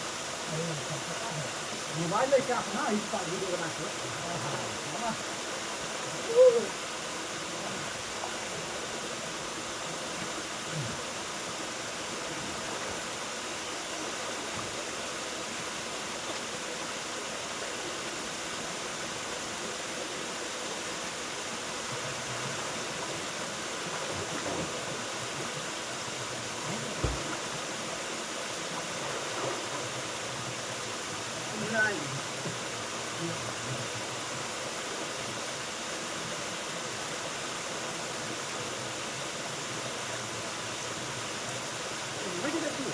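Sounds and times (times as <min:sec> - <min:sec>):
waterfall rushing: 0:00.0 - 0:42.9
faint low knocks: 0:26.9 - 0:27.5.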